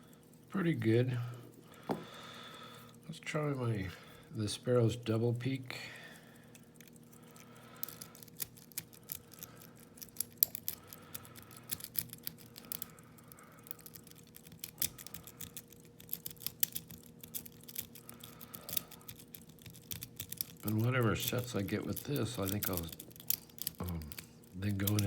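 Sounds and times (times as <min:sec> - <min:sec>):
lock pick clicking and scraping: 0:06.5 - 0:25.0.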